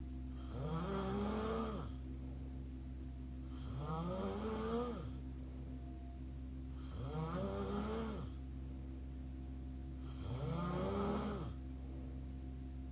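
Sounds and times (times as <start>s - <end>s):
low steady hum: 0.0s - 12.9s
open-mouth snoring: 0.3s - 2.0s, 3.4s - 5.2s, 6.7s - 8.4s, 10.0s - 11.6s.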